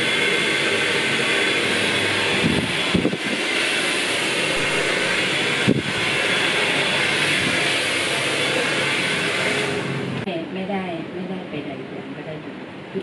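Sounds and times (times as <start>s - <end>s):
hair dryer blowing: 0.0s - 10.3s.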